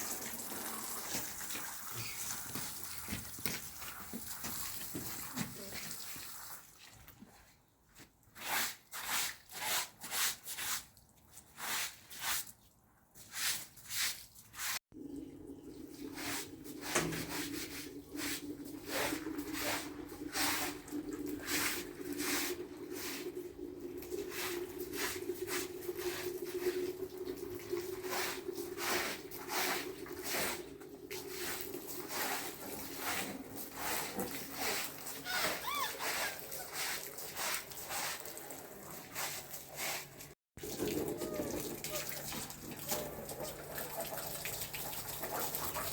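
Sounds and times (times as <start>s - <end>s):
water dripping: 0.0s - 7.3s, 15.0s - 32.9s, 40.6s - 45.9s.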